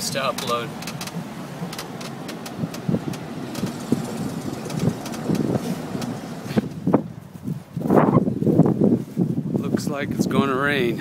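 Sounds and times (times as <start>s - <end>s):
car engine running: 0.0s - 8.2s
low thumps: 0.0s - 9.4s.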